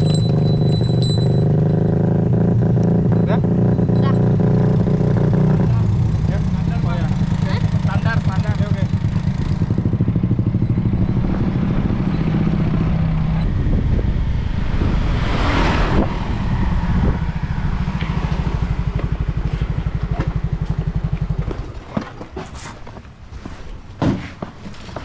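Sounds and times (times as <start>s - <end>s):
small motorbike engine running: 0.0s - 13.4s, 17.0s - 22.4s
rush of noise: 11.0s - 18.9s.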